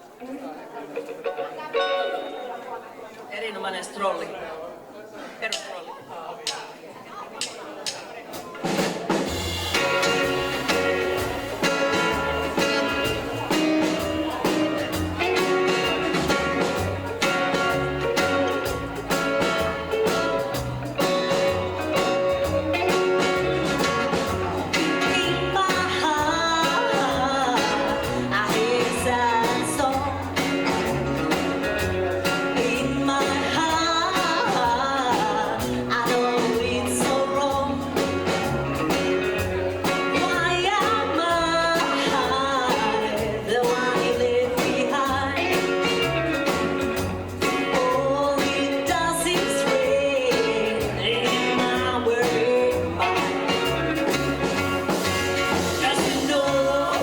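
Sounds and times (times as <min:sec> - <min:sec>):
live rockabilly band playing: 0:00.0 - 0:04.9, 0:05.5 - 0:57.0
person singing: 0:19.1 - 0:38.4, 0:39.8 - 0:46.6, 0:47.4 - 0:57.0.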